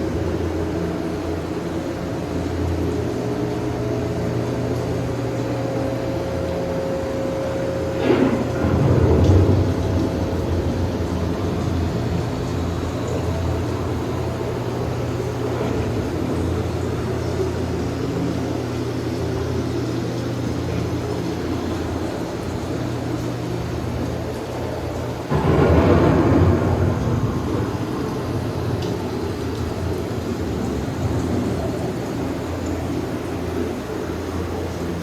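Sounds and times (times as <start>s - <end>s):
loud thunder clap: 8.0s - 16.4s, 25.2s - 33.8s
low thunder rumble: 8.0s - 35.0s.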